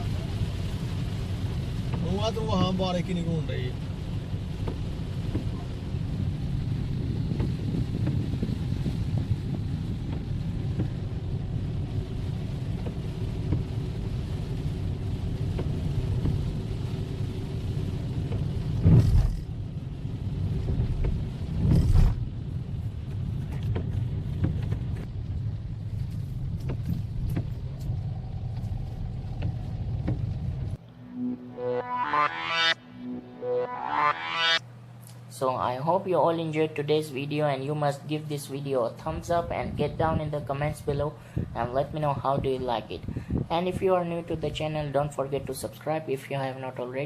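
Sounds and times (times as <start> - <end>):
vehicle rumble: 0.0 - 36.3.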